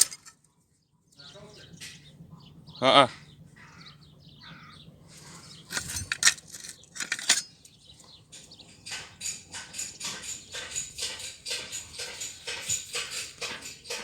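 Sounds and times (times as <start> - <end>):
scrap metal clinking and clanking: 0.0 - 0.4, 5.4 - 14.0.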